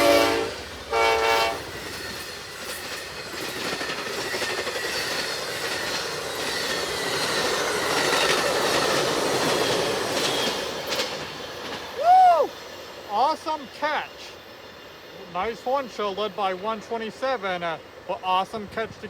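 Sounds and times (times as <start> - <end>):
locomotive horn blast: 0.0 - 1.7
train wheels rumbling and clicking: 0.0 - 17.8.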